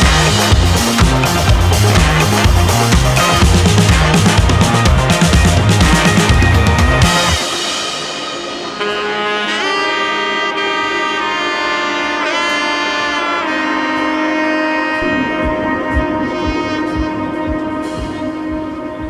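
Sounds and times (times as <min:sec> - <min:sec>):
steady low beat: 0:00.0 - 0:09.7, 0:15.0 - 0:19.0
saxophone-like horn sliding notes: 0:00.0 - 0:19.0.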